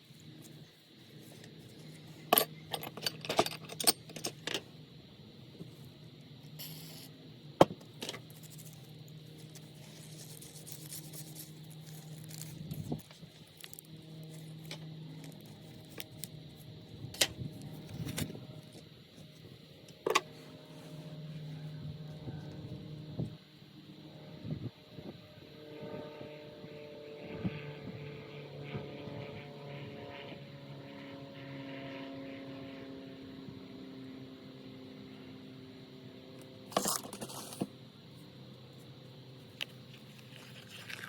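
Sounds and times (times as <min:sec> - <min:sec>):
steady low hum: 0:00.0 - 0:41.0
metal parts and tools clinking: 0:02.2 - 0:04.6.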